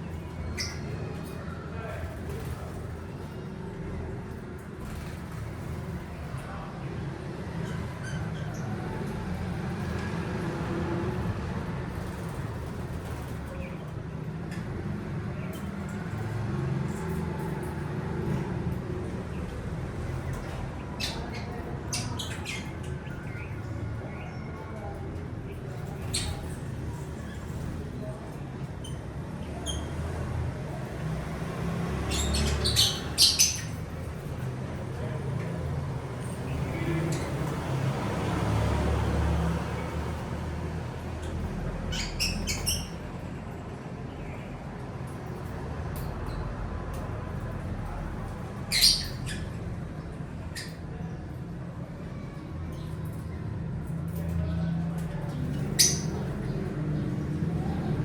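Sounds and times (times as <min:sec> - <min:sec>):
parrots shrill calls: 0:32.1 - 0:33.8, 0:48.7 - 0:49.4.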